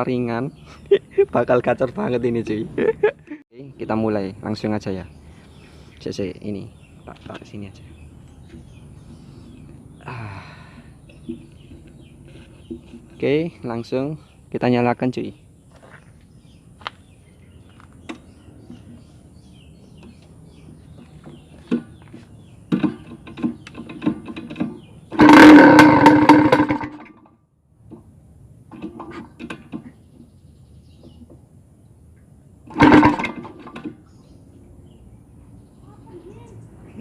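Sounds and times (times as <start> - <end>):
two-stroke engine blasting: 22.7 - 27.1, 32.7 - 33.9
sharp clattering: 22.7 - 27.3, 32.7 - 34.0.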